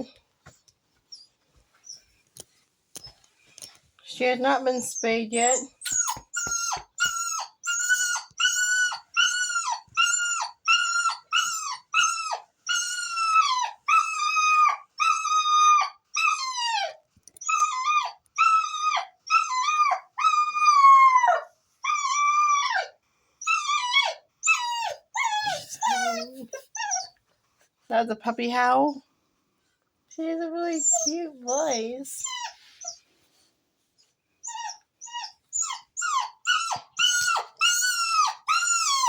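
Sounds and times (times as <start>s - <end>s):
puppy howling: 34.5s - 39.0s.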